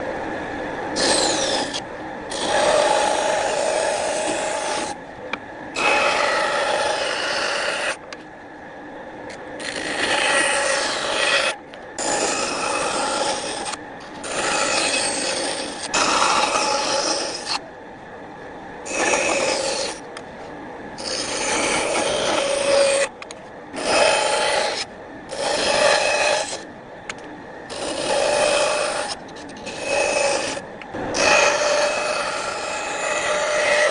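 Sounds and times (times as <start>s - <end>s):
wood being scraped: 1.0s - 5.0s, 5.8s - 8.0s, 9.6s - 17.6s, 18.9s - 20.1s, 21.0s - 23.2s, 23.8s - 26.6s, 27.7s - 33.9s.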